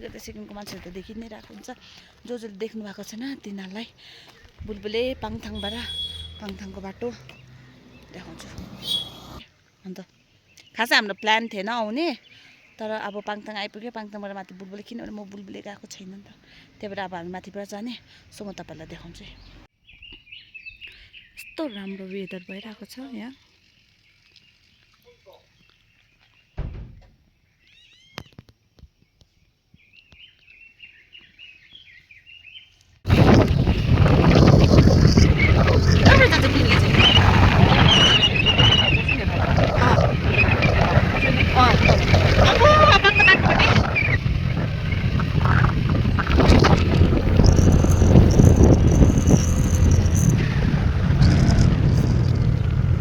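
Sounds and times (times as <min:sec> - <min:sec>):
vehicle rumbling on road: 0:03.7 - 0:09.5, 0:16.4 - 0:19.7, 0:33.1 - 0:53.0
wind buffeting microphone: 0:04.5 - 0:09.4, 0:33.1 - 0:53.0
small bird chirping and warbling: 0:05.4 - 0:09.4, 0:34.2 - 0:52.8
thump: 0:26.6 - 0:27.2.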